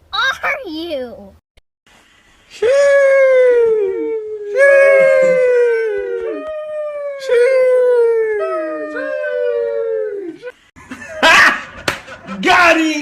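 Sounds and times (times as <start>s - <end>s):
dog howling: 2.8s - 10.6s.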